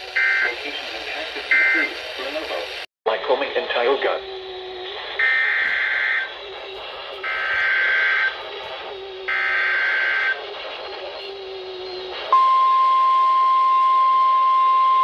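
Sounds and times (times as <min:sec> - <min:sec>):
warning alarm tone: 0:00.1 - 0:00.6, 0:05.2 - 0:06.5, 0:07.2 - 0:08.6, 0:09.2 - 0:10.5, 0:11.2 - 0:15.0
digital data burst screech: 0:01.4 - 0:02.0, 0:05.2 - 0:06.4, 0:07.2 - 0:08.5, 0:09.3 - 0:12.1.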